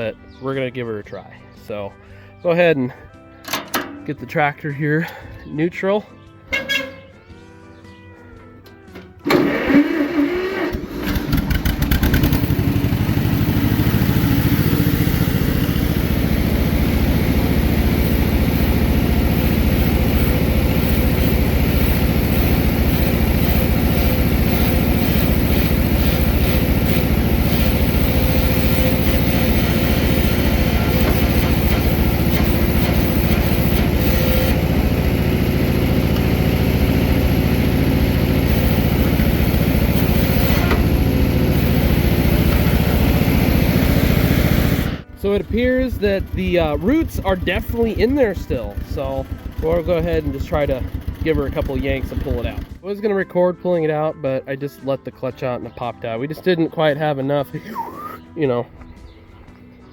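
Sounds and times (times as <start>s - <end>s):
tractor engine puttering: 3.4s - 5.9s, 6.5s - 7.2s, 8.6s - 52.8s.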